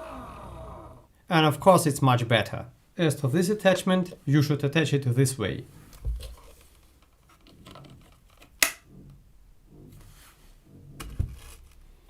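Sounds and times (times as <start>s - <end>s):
plastic attachment handling: 5.9s - 9.2s
sharp plastic click: 7.4s - 8.8s
low thumps: 8.8s - 11.4s.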